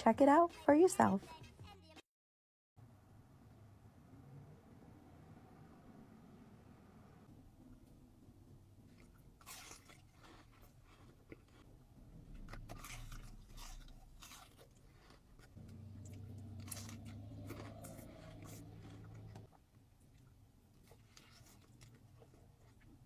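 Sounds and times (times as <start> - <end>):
crunching and chewing crisp food: 7.8 - 23.0
low steady hum: 11.6 - 20.8.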